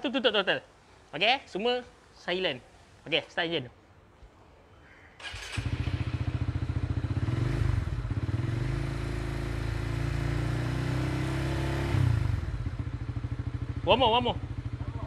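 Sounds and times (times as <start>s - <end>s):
motorcycle engine idling: 5.2s - 10.5s, 12.0s - 15.0s.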